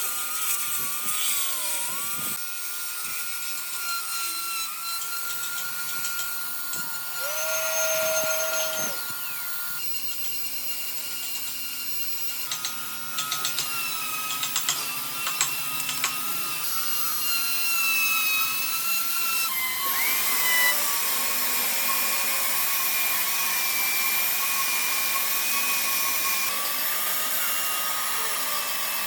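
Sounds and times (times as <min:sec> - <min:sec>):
power tool whining on wood: 0:00.0 - 0:29.0.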